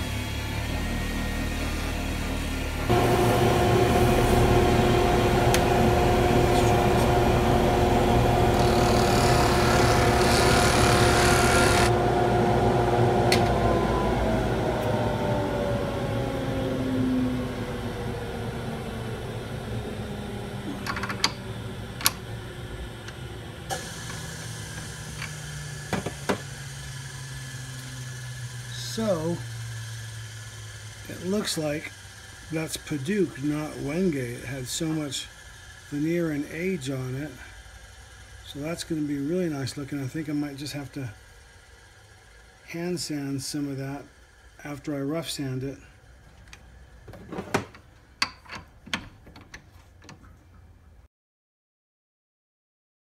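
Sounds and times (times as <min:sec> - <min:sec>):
lathe motor whining: 0:00.0 - 0:47.4
low hum: 0:00.3 - 0:34.7
sandpaper hissing on spinning wood: 0:06.2 - 0:11.9, 0:23.7 - 0:41.0.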